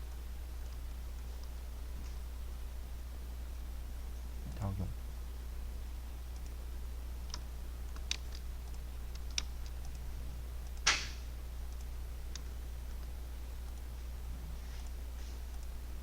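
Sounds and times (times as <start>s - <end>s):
low electrical hum: 0.0s - 16.0s
computer mouse and keyboard clicks: 7.2s - 10.0s.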